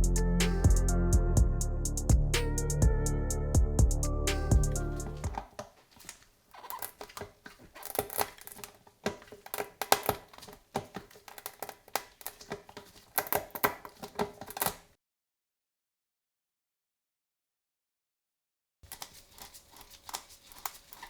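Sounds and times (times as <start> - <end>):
background music: 0.0 - 5.4.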